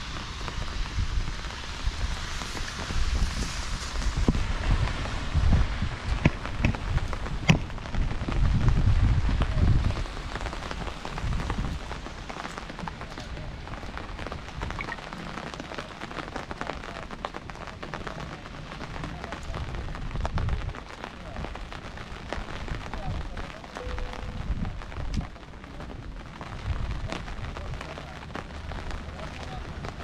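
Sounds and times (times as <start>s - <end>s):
heavy rain on hard surfaces: 0.0s - 30.0s
low rumble: 23.0s - 30.0s.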